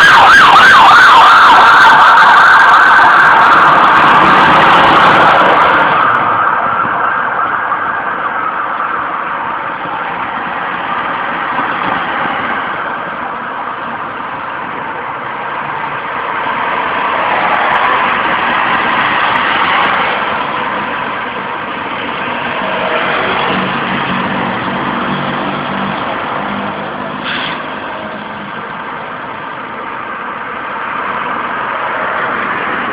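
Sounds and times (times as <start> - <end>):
road vehicles passing: 0.0 - 32.9.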